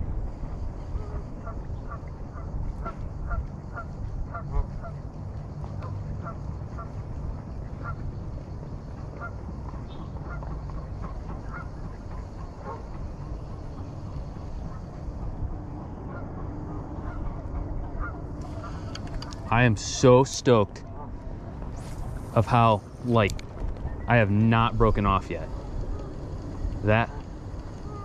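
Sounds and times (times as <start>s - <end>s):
low background rumble: 0.0s - 28.0s
geese honking: 10.2s - 13.9s, 16.0s - 19.5s.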